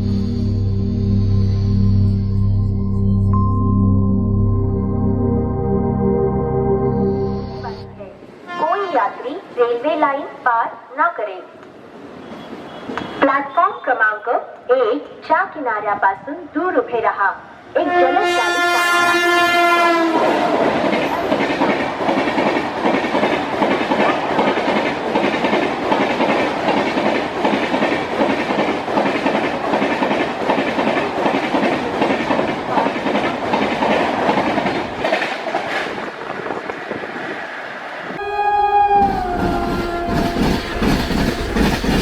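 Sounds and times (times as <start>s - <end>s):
locomotive horn: 7.3s - 9.1s, 17.8s - 20.6s, 38.2s - 42.0s
train wheels clickety-clack: 20.1s - 37.0s, 39.0s - 42.0s.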